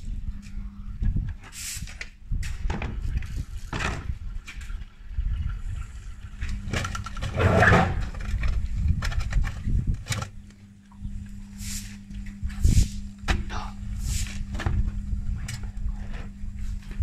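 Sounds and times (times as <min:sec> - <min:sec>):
washing machine spinning off balance: 0:02.7 - 0:11.4.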